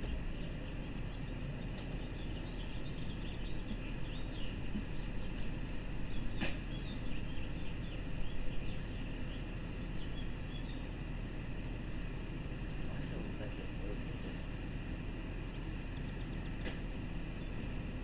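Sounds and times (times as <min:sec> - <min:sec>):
small birds chirping: 0:00.0 - 0:18.0
steady low rumble: 0:00.0 - 0:18.0.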